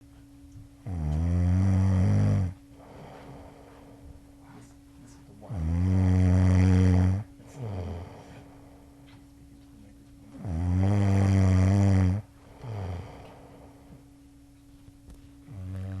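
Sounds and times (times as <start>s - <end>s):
person snoring loudly: 0.8s - 3.7s, 5.5s - 8.6s, 10.4s - 14.0s, 15.5s - 16.0s.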